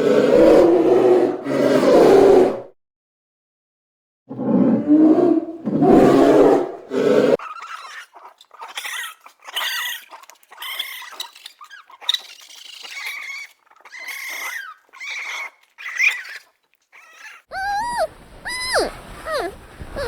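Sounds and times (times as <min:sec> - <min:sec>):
small animal squealing and squeaking: 0:07.4 - 0:20.0.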